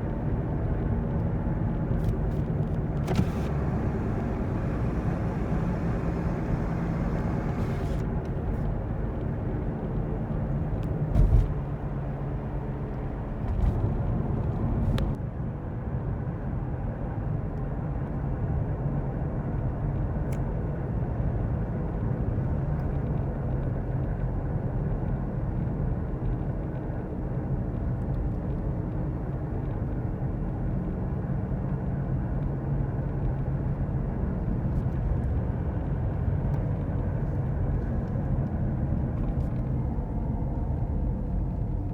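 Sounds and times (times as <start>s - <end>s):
wheel bearing rumbling and droning: 0.0s - 15.2s
short thumps: 10.7s - 12.0s.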